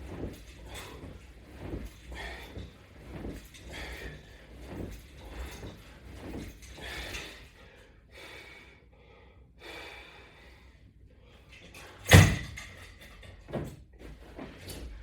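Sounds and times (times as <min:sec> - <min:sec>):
person breathing hard: 0:06.8 - 0:11.5.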